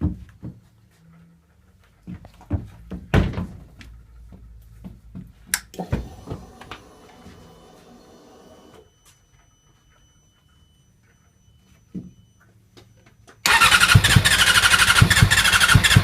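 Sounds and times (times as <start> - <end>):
fuel pump hum with high whine: 5.5 - 16.0.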